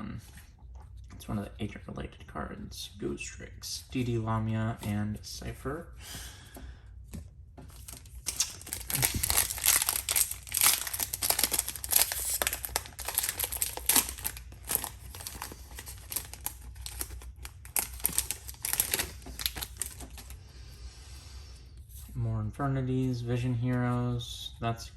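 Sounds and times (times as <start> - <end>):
foil wrapper crinkling and tearing: 7.8 - 20.4.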